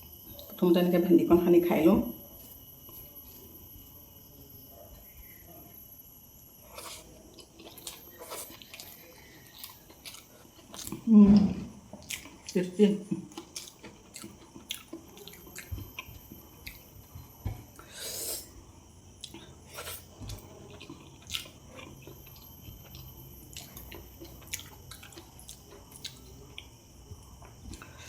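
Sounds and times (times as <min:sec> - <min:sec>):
person chewing and eating: 0:06.5 - 0:11.1, 0:11.7 - 0:28.0.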